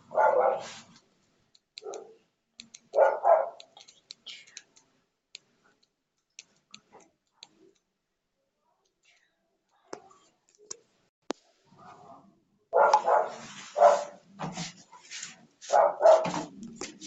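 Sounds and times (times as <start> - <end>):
dog barking: 0.0 - 0.9, 1.8 - 2.2, 2.9 - 3.7, 11.8 - 14.2, 15.7 - 16.5.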